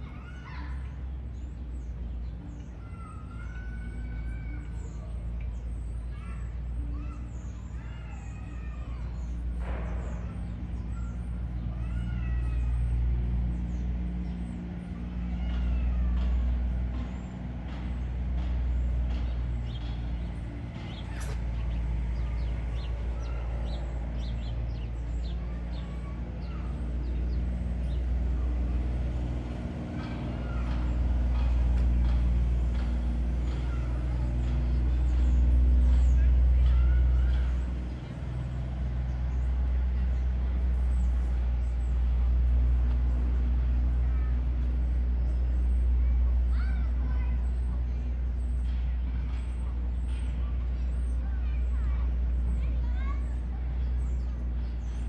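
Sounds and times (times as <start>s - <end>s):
birds chirping and whistling: 0.1s - 28.6s, 46.8s - 55.0s.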